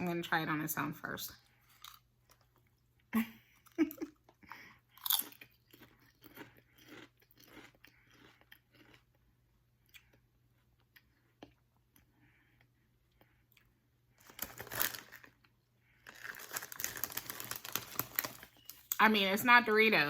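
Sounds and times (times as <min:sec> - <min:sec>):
crunchy chip chewing: 0:01.7 - 0:02.8, 0:05.0 - 0:10.2, 0:13.5 - 0:19.0.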